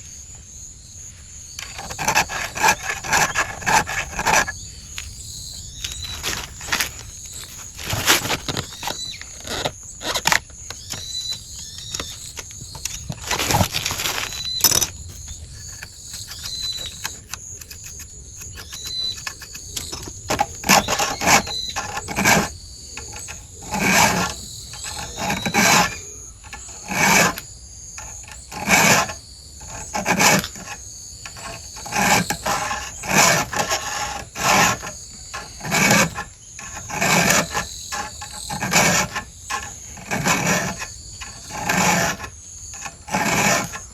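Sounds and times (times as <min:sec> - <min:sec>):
file rasping on saw chain: 0:01.6 - 0:05.0, 0:05.8 - 0:43.9.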